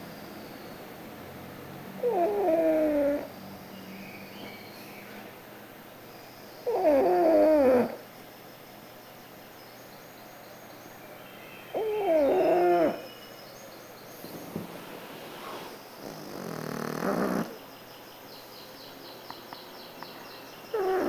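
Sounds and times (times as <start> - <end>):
dog snoring: 1.9 - 3.3, 6.6 - 8.0, 11.7 - 13.1, 14.2 - 17.6, 20.7 - 21.0.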